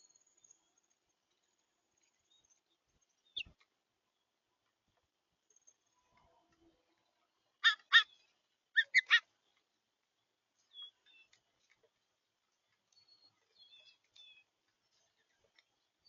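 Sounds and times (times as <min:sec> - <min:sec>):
harsh bird chirps: 0:08.8 - 0:09.2.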